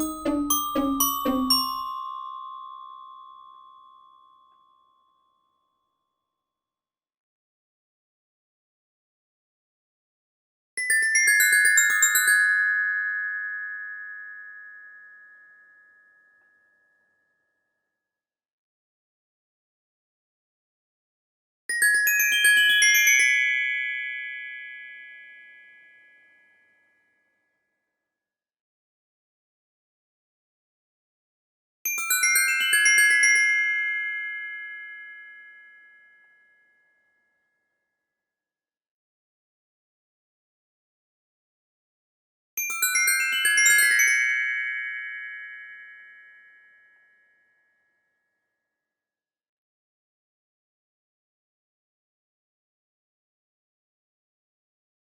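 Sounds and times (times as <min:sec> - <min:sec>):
glockenspiel descending run: 0:00.0 - 0:02.2.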